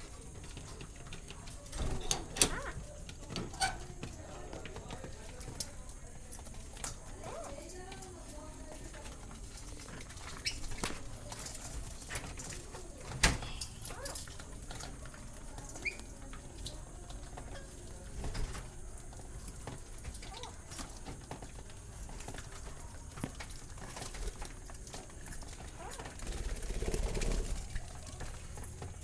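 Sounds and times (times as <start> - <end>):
birds clicking and scratching: 0.0 - 29.0.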